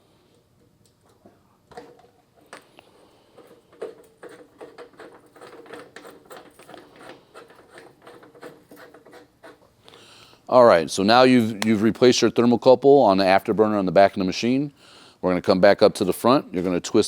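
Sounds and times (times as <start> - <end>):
metal cap scraping and clicking: 3.4 - 9.6.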